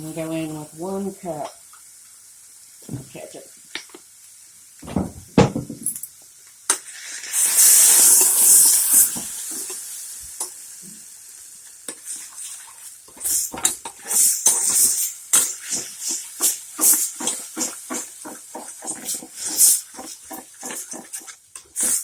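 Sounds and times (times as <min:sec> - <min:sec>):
sauce sizzling in a pan: 0:00.0 - 0:04.8, 0:06.0 - 0:22.0
spoon stirring sauce: 0:16.4 - 0:21.9.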